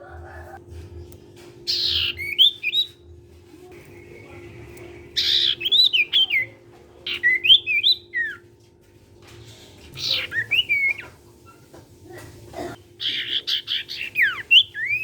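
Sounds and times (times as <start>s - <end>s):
songbird whistling: 1.7s - 3.1s, 3.8s - 8.5s, 10.0s - 11.6s, 13.0s - 15.0s.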